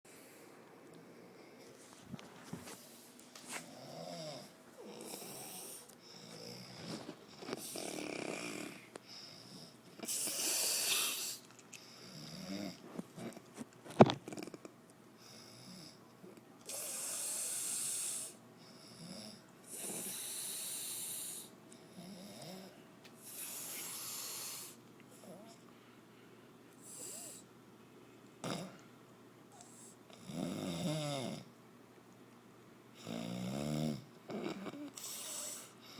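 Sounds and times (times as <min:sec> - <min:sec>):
person snoring with rattle: 0:03.6 - 0:08.9, 0:12.0 - 0:14.7.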